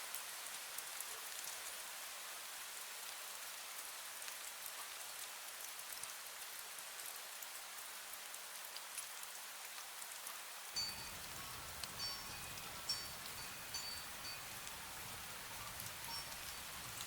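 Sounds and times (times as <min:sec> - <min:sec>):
fine rain: 0:00.0 - 0:17.0
wind bell tinkling: 0:10.8 - 0:17.0.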